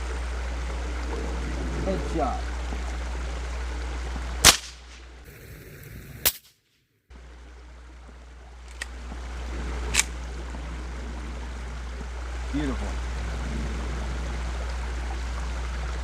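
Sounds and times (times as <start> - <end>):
rifle shots cracking: 4.4 - 5.1, 6.2 - 6.6, 9.9 - 10.1.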